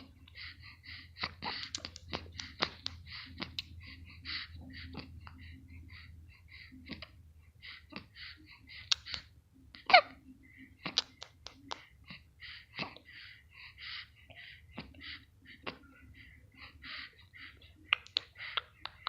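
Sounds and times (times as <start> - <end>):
child hiccuping: 9.8 - 10.2.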